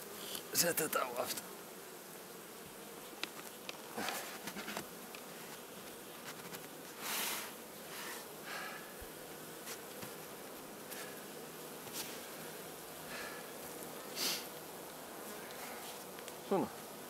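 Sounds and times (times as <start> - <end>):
bees humming: 0.0 - 17.0.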